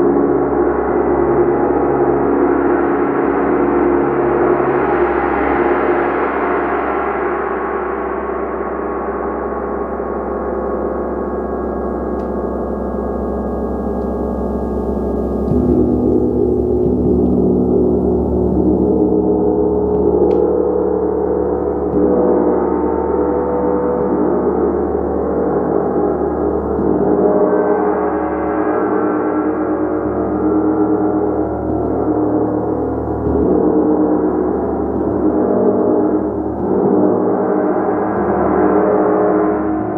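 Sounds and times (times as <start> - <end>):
gong ringing: 11.1 - 27.7.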